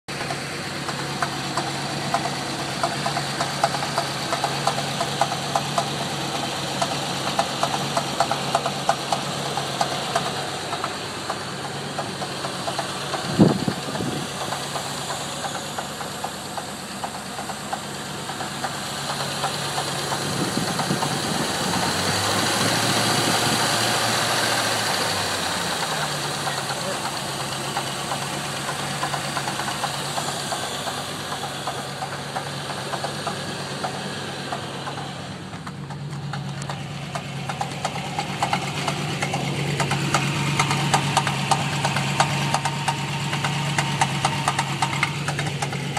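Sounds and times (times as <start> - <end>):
engine running with clunking knock: 0.1 - 45.9
heavy engine thump: 7.4 - 23.6.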